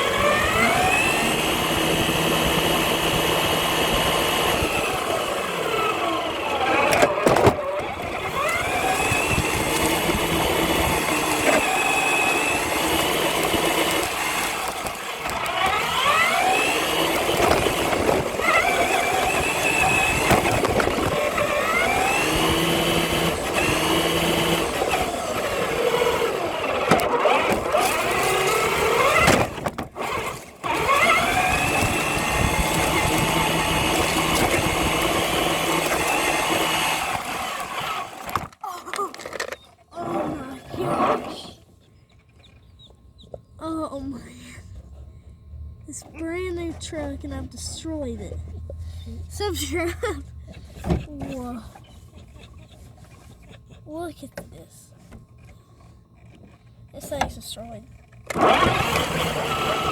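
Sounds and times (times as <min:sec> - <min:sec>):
electric motor whining: 0:00.0 - 0:43.0, 0:45.5 - 0:59.9.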